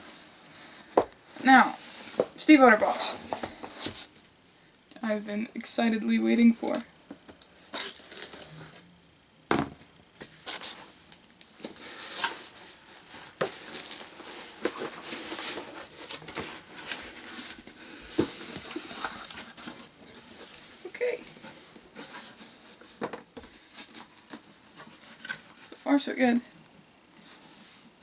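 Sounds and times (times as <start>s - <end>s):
cardboard packaging crinkling and tearing: 7.5s - 8.8s, 11.5s - 20.4s.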